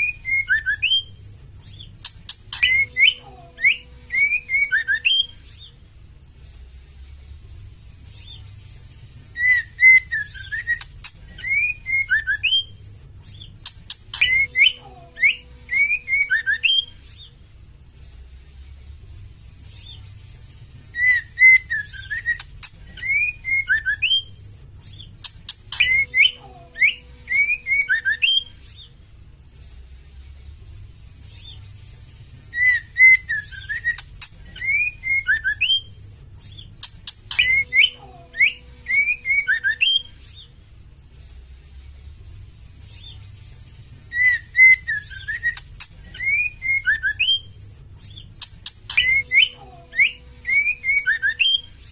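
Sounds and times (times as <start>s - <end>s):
bird whistled calls: 0.0s - 1.1s, 1.7s - 5.7s, 9.3s - 12.8s, 13.6s - 17.3s, 20.9s - 28.9s, 32.5s - 35.9s, 36.5s - 40.5s, 44.1s - 51.9s
sharp high bird chips: 0.0s - 5.7s, 9.3s - 17.4s, 20.8s - 29.0s, 32.6s - 40.4s, 44.0s - 51.9s.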